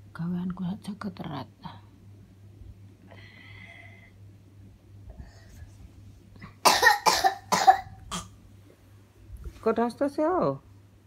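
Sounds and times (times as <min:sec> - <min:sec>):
young child coughing: 0:06.5 - 0:08.4.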